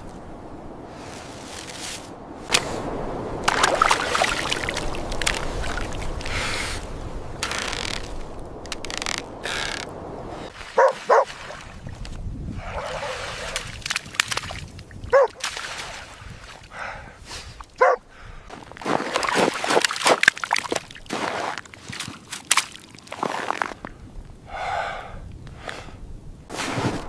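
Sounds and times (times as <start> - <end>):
rustling noise: 0.0 - 3.0, 4.8 - 11.3, 26.5 - 27.0.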